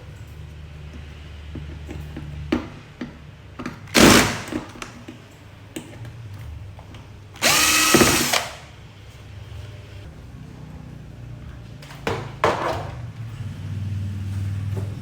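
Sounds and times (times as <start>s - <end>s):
power drill-driver whine: 7.4s - 8.6s.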